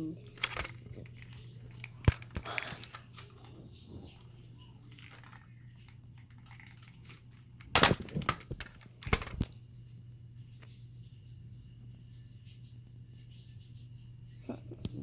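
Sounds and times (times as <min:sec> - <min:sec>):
plastic toy gun clattering: 0:00.2 - 0:03.5, 0:04.8 - 0:09.5.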